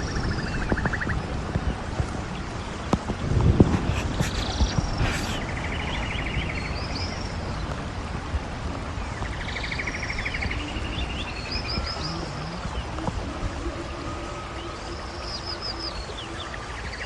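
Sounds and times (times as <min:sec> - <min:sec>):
songbirds singing: 0:00.0 - 0:17.0
steady low rumble: 0:00.0 - 0:17.0
bird trill: 0:09.2 - 0:17.0.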